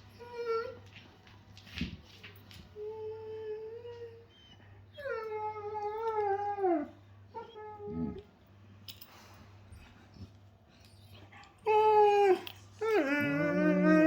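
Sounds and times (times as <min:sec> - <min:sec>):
dog howling and whining: 0:02.9 - 0:08.3, 0:11.0 - 0:14.0.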